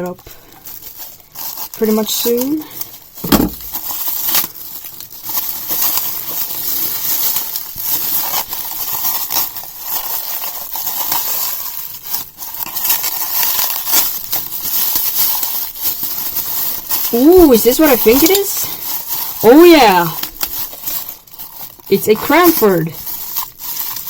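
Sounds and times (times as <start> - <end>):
plastic bags crinkling: 0.0 - 24.0
thump: 3.2 - 3.7.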